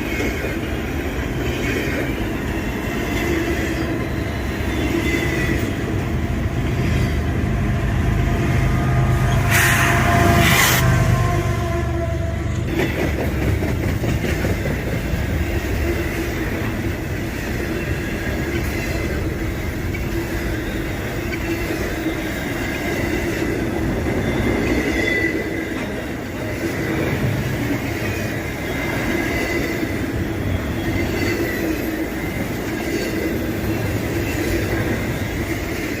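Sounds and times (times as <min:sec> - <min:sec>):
metallic wheel squeal: 0:00.0 - 0:05.8, 0:17.6 - 0:23.4, 0:24.0 - 0:26.0, 0:27.9 - 0:36.0
freight train wheels rumbling: 0:00.0 - 0:36.0
locomotive horn: 0:08.7 - 0:12.7.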